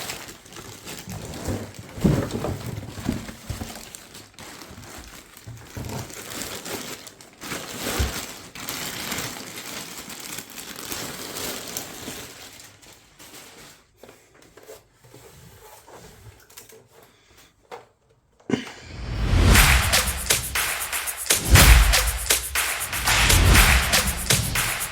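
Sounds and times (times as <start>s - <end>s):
packaging crinkling and rustling: 0.0s - 15.2s.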